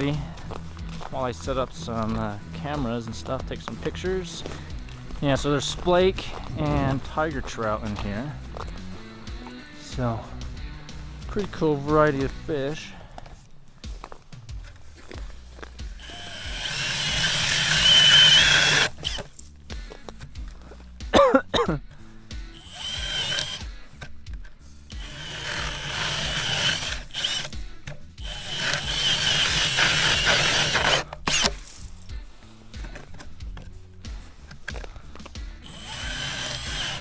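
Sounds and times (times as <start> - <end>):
power ice auger whining: 0.0 - 37.0.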